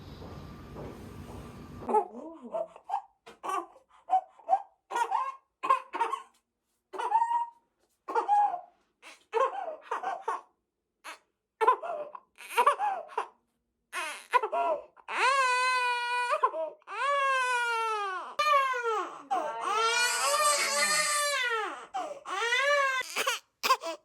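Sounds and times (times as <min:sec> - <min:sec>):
baby wailing: 0:01.9 - 0:06.3, 0:07.0 - 0:08.6, 0:13.9 - 0:24.0.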